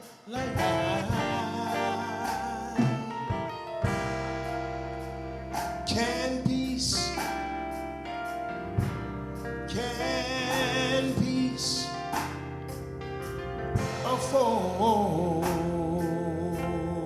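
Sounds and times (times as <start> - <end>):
guitar: 0.0 - 17.0
organ-like chords: 0.0 - 17.0
person singing hymn: 0.2 - 3.9, 9.7 - 12.1.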